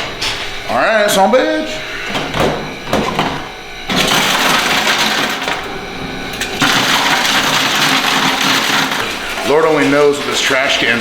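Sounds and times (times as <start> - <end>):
knocks: 2.2 - 3.4
ice cubes clattering into bin: 3.9 - 5.7, 6.3 - 11.0.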